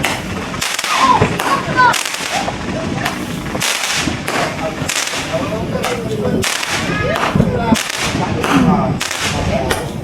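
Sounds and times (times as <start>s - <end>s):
fireworks cracking: 0.0s - 10.0s.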